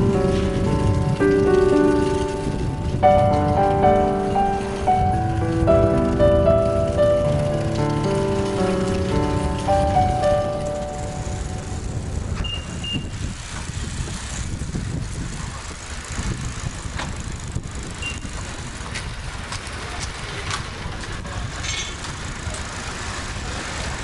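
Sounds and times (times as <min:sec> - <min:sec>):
road traffic rumble: 0:00.0 - 0:24.0
wind buffeting microphone: 0:00.0 - 0:24.0
short high beeps: 0:12.4 - 0:13.1.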